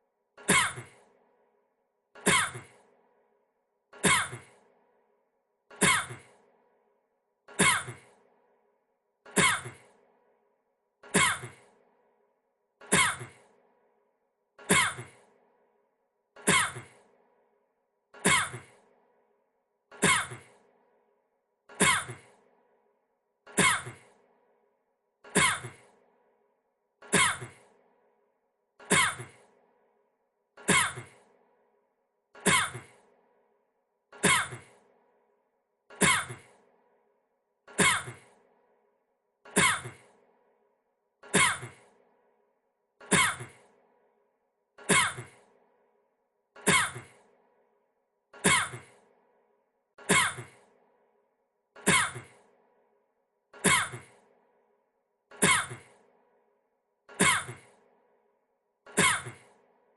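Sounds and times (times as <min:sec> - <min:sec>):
man coughing: 0:25.4 - 0:25.8, 0:39.6 - 0:40.0, 0:57.2 - 0:57.7.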